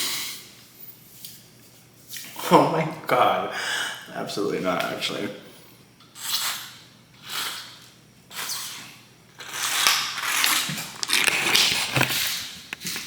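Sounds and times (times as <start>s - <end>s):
rustling crinkling handling noise: 9.8s - 13.0s.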